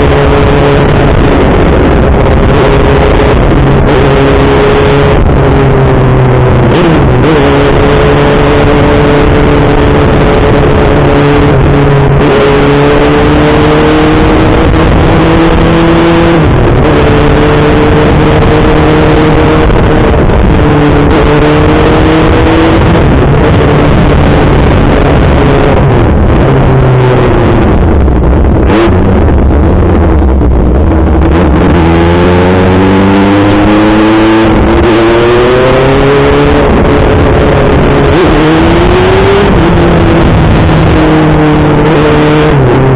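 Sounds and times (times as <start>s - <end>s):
motorcycle engine accelerating: 0.0s - 42.9s.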